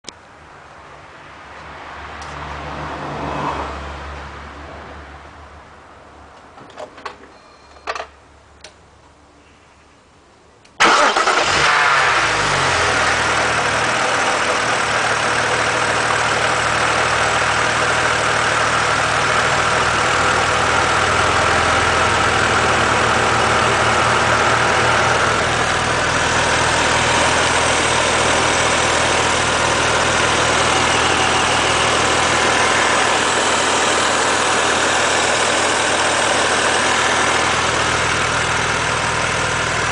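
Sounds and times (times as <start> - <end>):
car engine starting and idling: 10.7 - 39.9.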